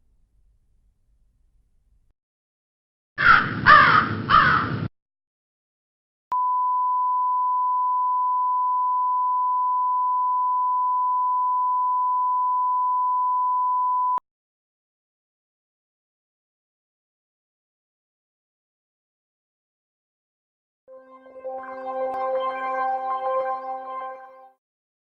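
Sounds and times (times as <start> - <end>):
crow cawing: 3.2 - 4.7
censor beep: 6.3 - 14.2.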